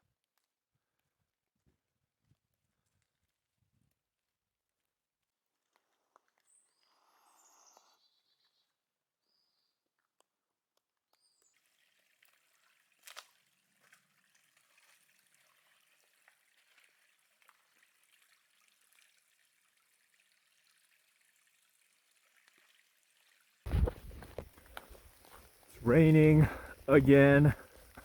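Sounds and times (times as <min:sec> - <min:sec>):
water drips: 0:11.4 - 0:28.0
light rain patter: 0:11.6 - 0:28.0.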